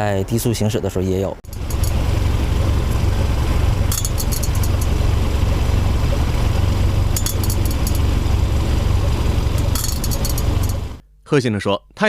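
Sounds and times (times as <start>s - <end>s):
car driving low drone: 1.4s - 11.0s.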